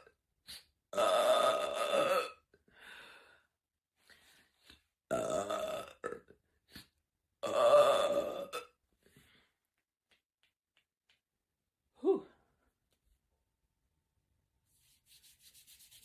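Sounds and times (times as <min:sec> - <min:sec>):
woman belching: 0:00.9 - 0:02.4, 0:05.1 - 0:06.3, 0:07.4 - 0:08.8.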